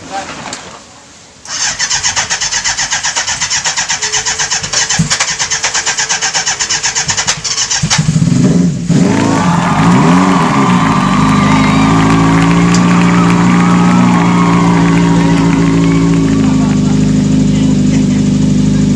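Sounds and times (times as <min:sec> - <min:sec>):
electric starter cranking engine: 0:01.4 - 0:08.2
engine running wavering pitch: 0:08.8 - 0:18.9.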